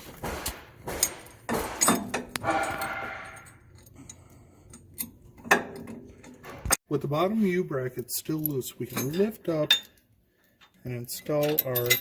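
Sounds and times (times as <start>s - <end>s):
steel parts clinking: 0.2s - 6.4s, 8.3s - 12.0s
ringing metal clank: 0.9s - 3.6s.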